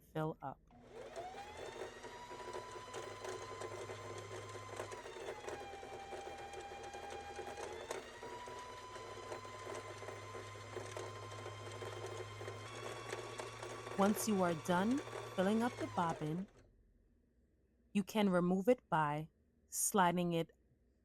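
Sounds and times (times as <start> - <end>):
sewing machine motor whine: 0.8 - 16.6.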